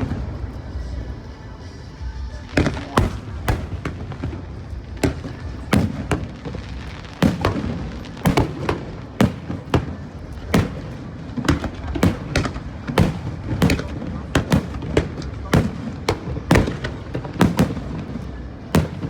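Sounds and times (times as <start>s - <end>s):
fireworks bangs: 0.0s - 19.0s.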